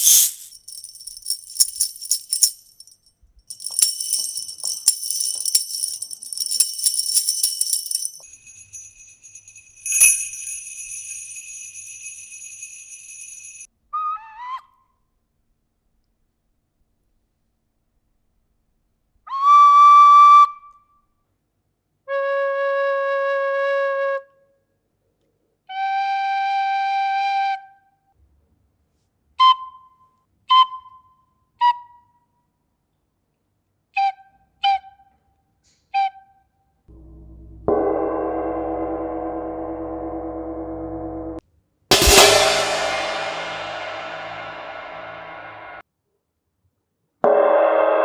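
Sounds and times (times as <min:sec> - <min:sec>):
bright crash: 0:41.9 - 0:45.7.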